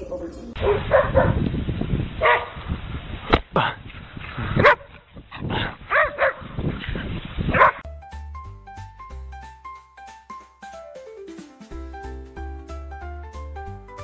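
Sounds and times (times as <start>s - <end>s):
dog barking and yipping: 0.6s - 1.4s, 2.2s - 2.6s, 4.6s - 5.0s, 5.9s - 6.5s, 7.5s - 7.8s
light piano instrumental music: 7.8s - 14.0s.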